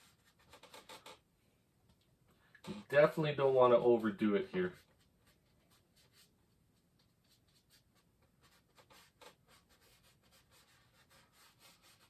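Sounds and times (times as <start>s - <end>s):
brush dabbing paint on canvas: 4.6s - 12.0s
brush scraping canvas: 7.0s - 12.0s.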